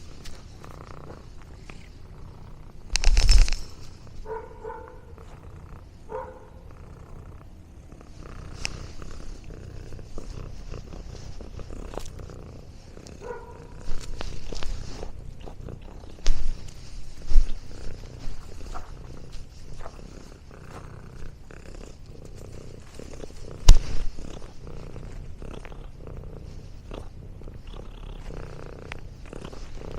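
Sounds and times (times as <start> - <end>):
cat purring: 0.0 - 29.9.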